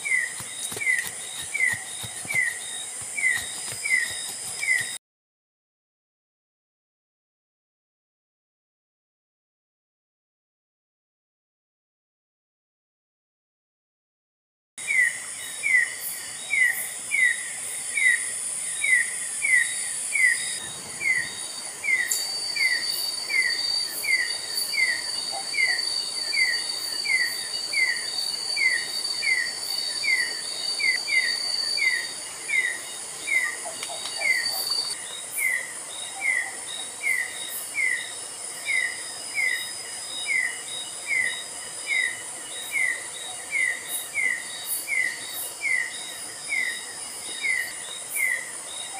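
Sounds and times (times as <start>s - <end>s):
insects buzzing: 0.0s - 5.0s, 14.9s - 48.9s.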